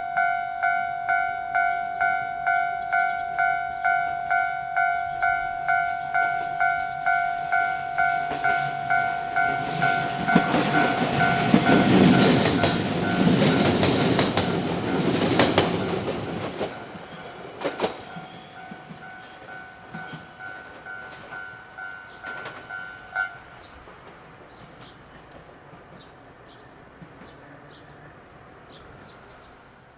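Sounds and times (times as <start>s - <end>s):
level-crossing warning bell: 0.0s - 23.5s
train rumble and wheel clacks: 1.1s - 29.9s.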